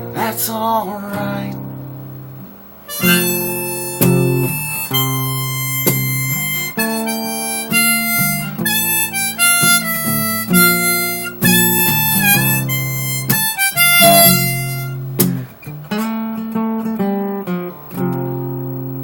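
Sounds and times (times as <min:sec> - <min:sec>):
acoustic guitar: 0:00.0 - 0:19.0
harmonica solo: 0:02.9 - 0:15.7.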